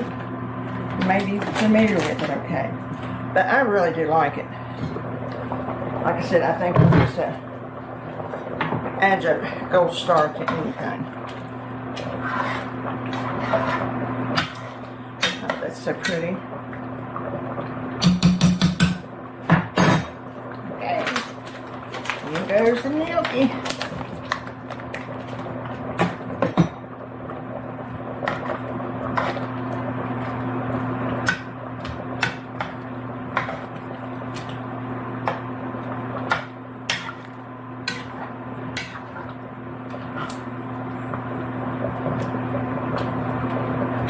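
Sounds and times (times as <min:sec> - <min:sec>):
utensil scraping a pot: 0:12.0 - 0:14.9.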